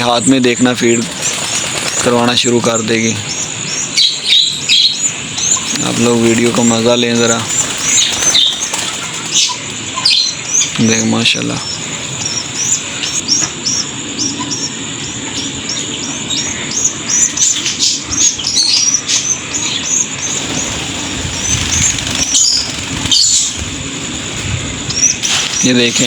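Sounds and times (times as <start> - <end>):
caged birds chirping: 0.0 - 26.0
high-pitched hiss: 20.0 - 26.0.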